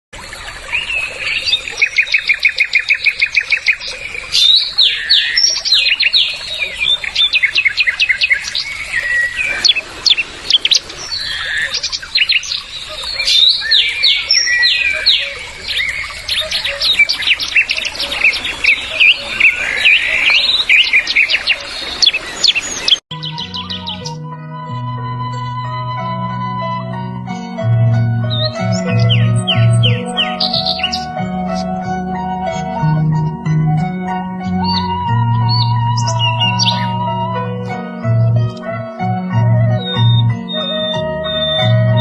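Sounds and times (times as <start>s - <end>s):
songbirds singing: 0.4s - 24.2s, 28.2s - 31.8s, 34.6s - 37.1s, 39.7s - 42.0s.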